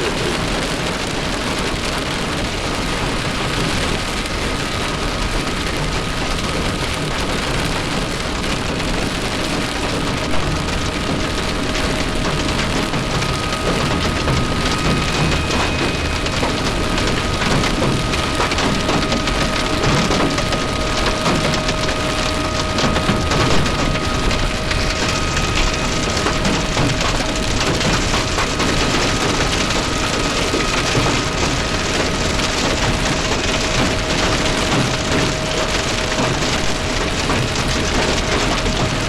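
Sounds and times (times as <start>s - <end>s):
heavy rain drumming on a truck: 0.0s - 39.0s.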